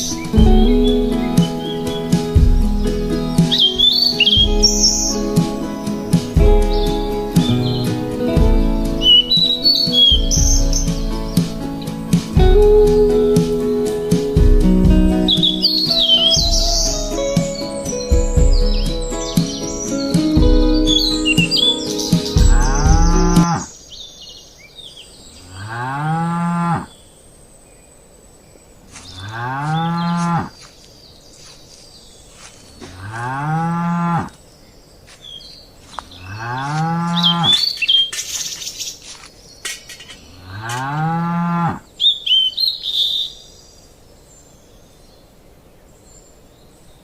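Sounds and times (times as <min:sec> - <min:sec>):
faint bird chirps: 0:03.4 - 0:05.3, 0:09.0 - 0:11.4, 0:15.3 - 0:25.9, 0:41.9 - 0:47.0
cow mooing: 0:25.5 - 0:26.9, 0:29.2 - 0:30.5, 0:32.8 - 0:34.4, 0:36.2 - 0:37.6, 0:40.4 - 0:41.8.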